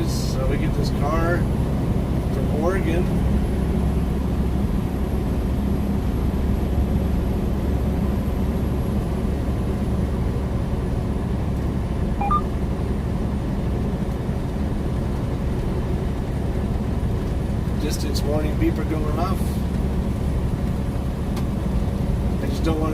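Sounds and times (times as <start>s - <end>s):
truck engine and tyre rumble: 0.0s - 22.9s
two-note beep: 12.2s - 12.5s.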